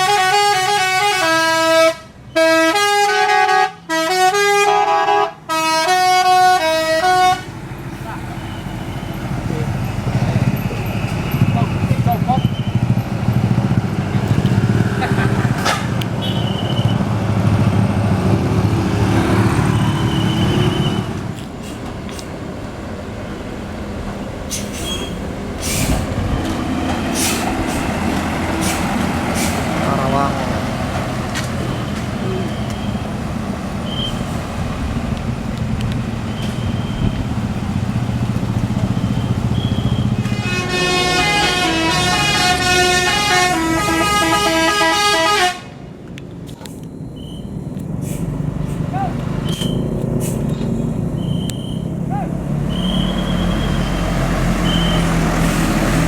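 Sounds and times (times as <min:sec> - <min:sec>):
bus diesel engine rumbling: 0:00.0 - 0:56.0
multi-tone horn playing a tune: 0:40.2 - 0:45.7.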